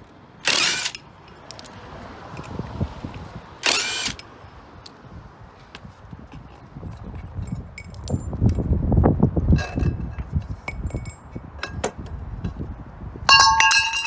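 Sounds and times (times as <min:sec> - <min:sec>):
metal tools clinking and tapping: 0:07.1 - 0:08.6, 0:09.6 - 0:12.0, 0:13.3 - 0:14.0
ringing metal clank: 0:13.3 - 0:14.0.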